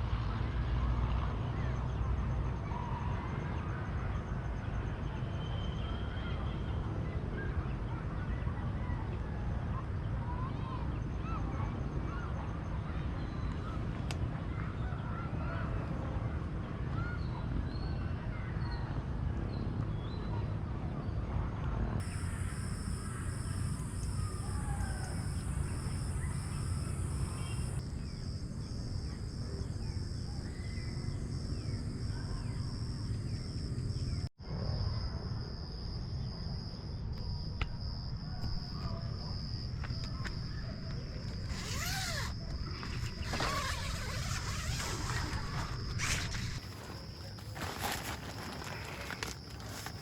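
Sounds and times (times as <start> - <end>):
continuous low rumble: 0.0 - 50.0
insect pulsing chirp: 22.0 - 34.2, 36.6 - 50.0
rustling: 41.0 - 50.0.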